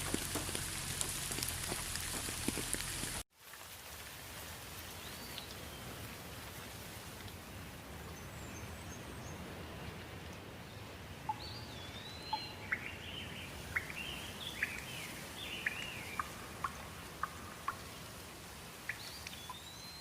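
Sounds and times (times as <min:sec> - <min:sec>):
steady rain: 0:00.0 - 0:20.0
bird singing: 0:11.3 - 0:17.8, 0:18.9 - 0:20.0.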